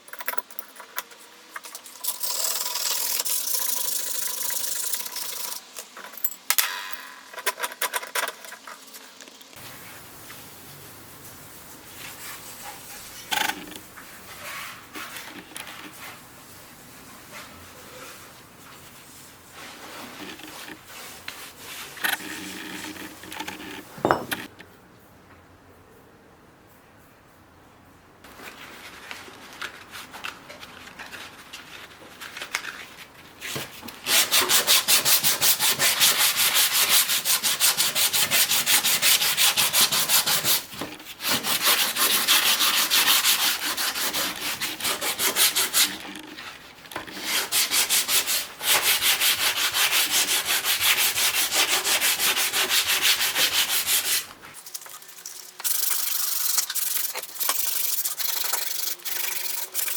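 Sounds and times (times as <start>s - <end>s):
sandpaper rubbing by hand: 34.1s - 46.1s, 47.2s - 59.9s.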